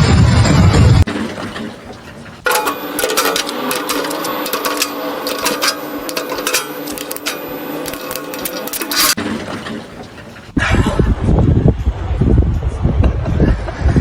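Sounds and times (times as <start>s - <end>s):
steady machine hum: 0.0s - 13.8s
small machine clattering: 1.0s - 10.6s.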